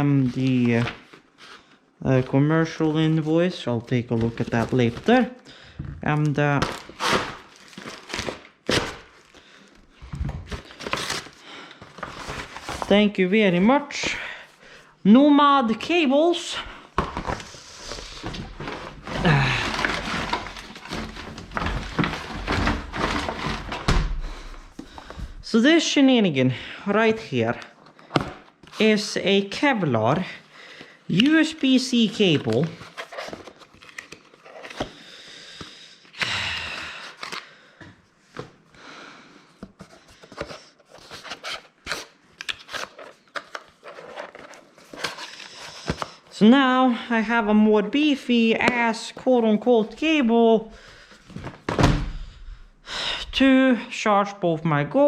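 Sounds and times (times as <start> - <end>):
packaging rustling and clicks: 10.3 - 12.9, 17.0 - 25.4, 32.1 - 35.0, 39.6 - 46.2.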